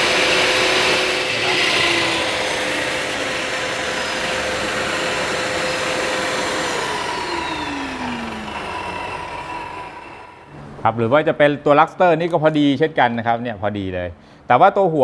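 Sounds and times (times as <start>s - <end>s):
shop vacuum running: 0.0s - 11.0s.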